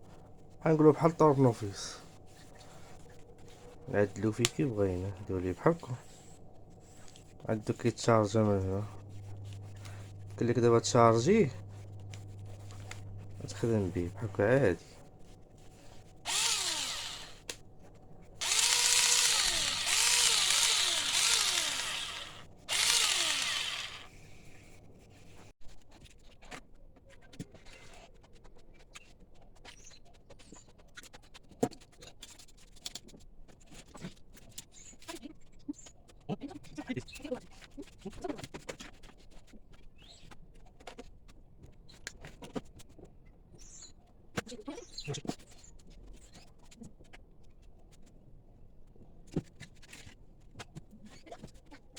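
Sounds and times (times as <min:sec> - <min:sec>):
cordless drill motor whining: 0:16.3 - 0:17.5, 0:18.4 - 0:24.1
small parts clicking and tapping: 0:18.4 - 0:24.1.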